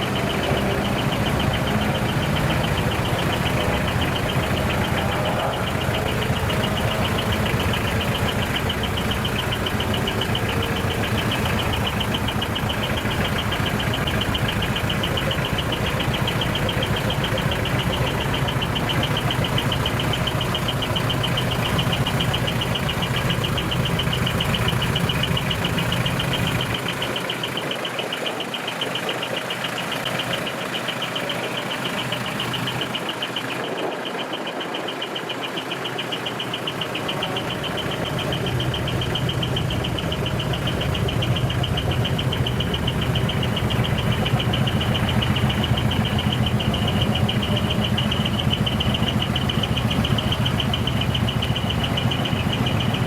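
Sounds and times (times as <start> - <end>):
diesel truck engine rumble: 0.0 - 53.0
fast-pulsing high tone: 0.0 - 53.0.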